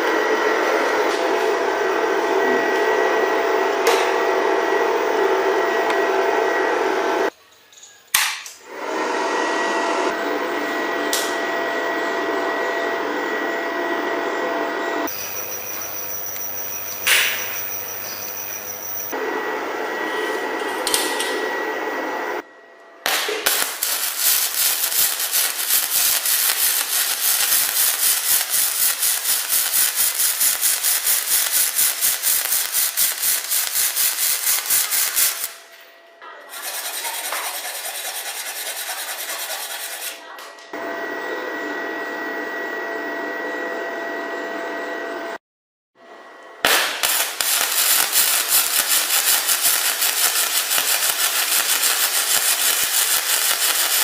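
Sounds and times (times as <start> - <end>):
welding arc crackling: 15.0 - 19.2, 23.1 - 35.7, 46.6 - 54.0.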